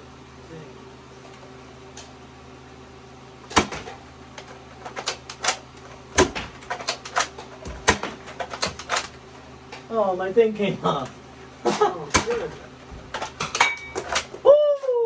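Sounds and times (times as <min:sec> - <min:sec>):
sharp clicks and knocks: 0:03.5 - 0:09.9, 0:12.1 - 0:14.4.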